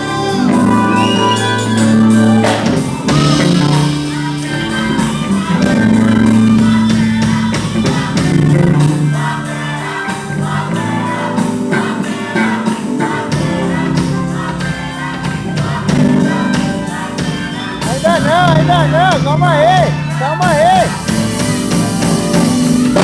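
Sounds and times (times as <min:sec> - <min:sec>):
steady beat: 0:00.0 - 0:23.0
sustained bass notes: 0:00.0 - 0:23.0
person singing: 0:17.8 - 0:21.2.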